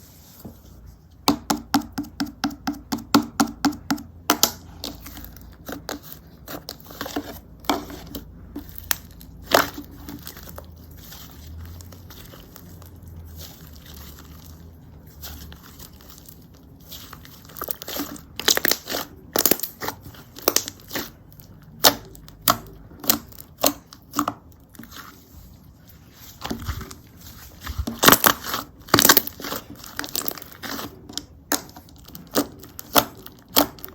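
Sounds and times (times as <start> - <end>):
slime squished by hand: 3.6 - 33.9.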